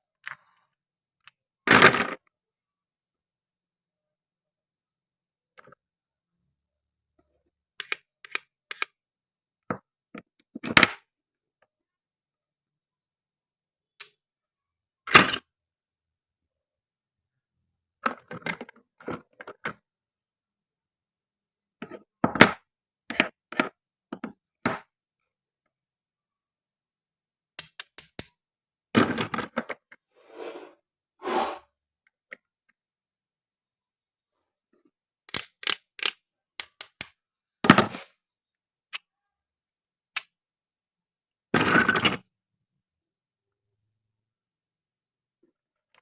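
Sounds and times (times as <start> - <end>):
toy food pieces clicking: 35.3 - 37.2.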